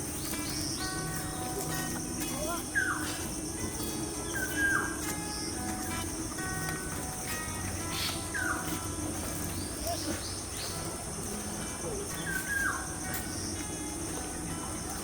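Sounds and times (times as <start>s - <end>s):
high-pitched insect drone: 0.0s - 15.0s
high bird chirps: 0.2s - 5.6s, 7.9s - 8.8s.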